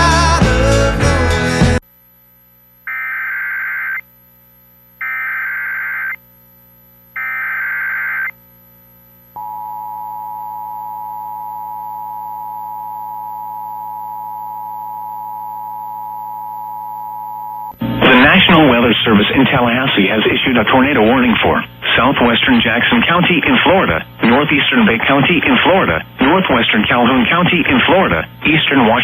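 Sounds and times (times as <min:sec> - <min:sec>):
warbling digital data bursts: 0:02.8 - 0:04.1, 0:04.9 - 0:06.4, 0:07.0 - 0:08.4.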